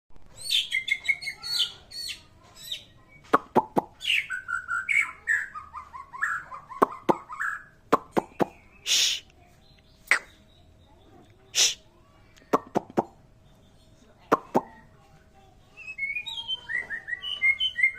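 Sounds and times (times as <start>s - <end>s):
bird singing whistled phrases: 4.0s - 9.2s, 15.7s - 17.9s.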